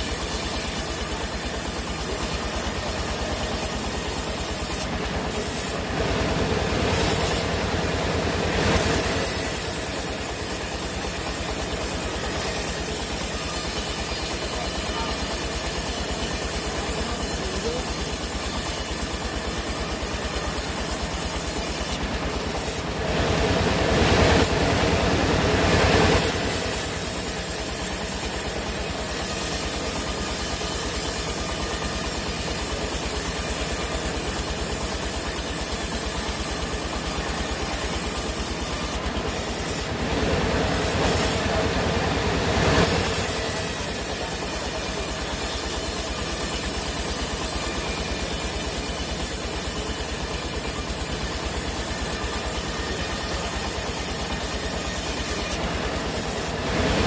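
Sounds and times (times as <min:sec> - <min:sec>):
saw cutting log: 0:00.0 - 0:05.9, 0:06.6 - 0:07.6, 0:08.6 - 0:23.0, 0:25.7 - 0:41.8, 0:42.5 - 0:57.0
sawmill machinery running: 0:00.0 - 0:57.0.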